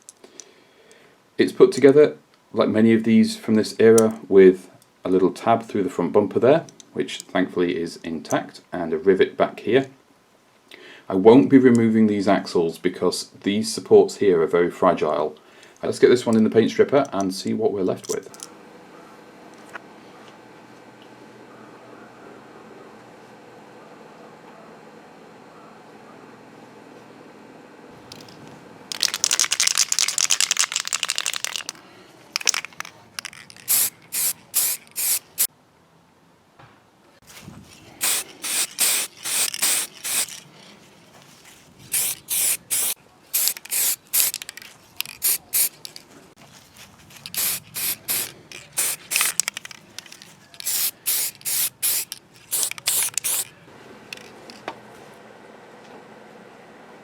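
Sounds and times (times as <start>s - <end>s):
spray hissing: 33.6s - 35.5s, 38.0s - 40.4s, 41.9s - 44.4s, 45.2s - 45.8s, 47.2s - 49.5s, 50.6s - 53.5s.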